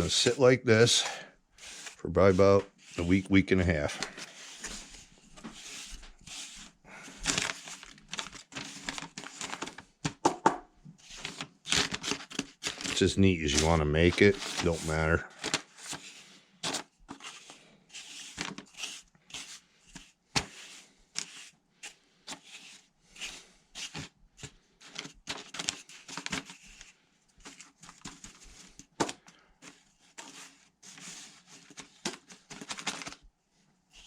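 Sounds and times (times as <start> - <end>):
hand scraping wet sugar: 0.0 - 9.5, 12.6 - 24.1, 29.6 - 31.9.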